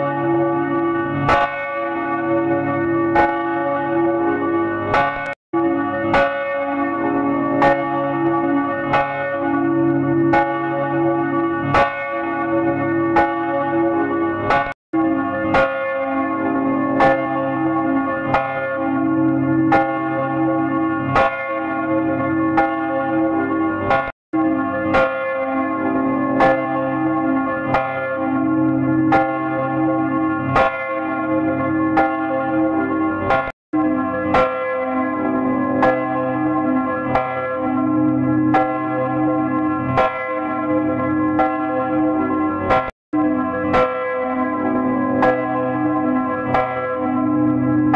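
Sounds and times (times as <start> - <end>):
church bell ringing: 0.0 - 47.9.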